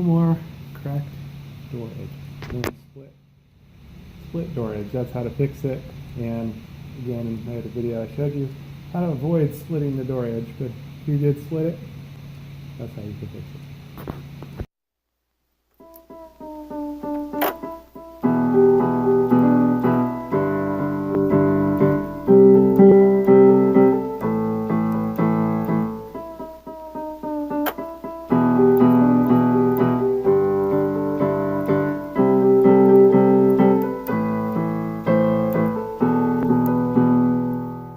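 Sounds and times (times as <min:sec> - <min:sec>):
piano chords: 0:15.8 - 0:37.9.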